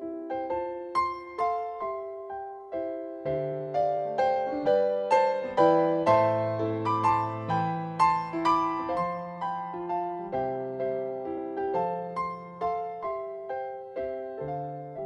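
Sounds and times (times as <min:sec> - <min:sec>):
slow gentle piano melody: 0:00.0 - 0:15.0.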